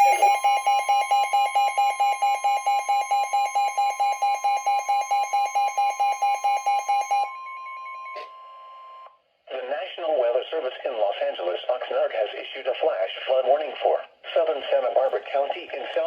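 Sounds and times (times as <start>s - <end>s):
rapid pulsing alarm beep: 0.0s - 9.0s
steady warning alarm tone: 0.0s - 9.1s.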